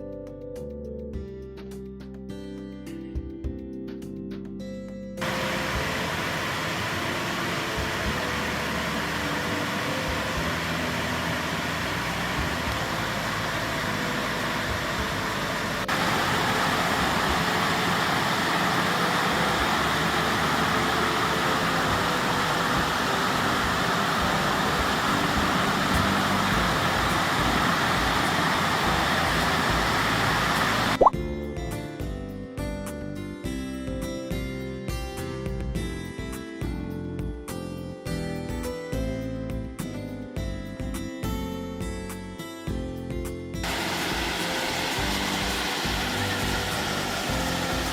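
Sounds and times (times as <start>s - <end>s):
waterfall rushing: 5.2s - 31.1s, 43.6s - 47.9s.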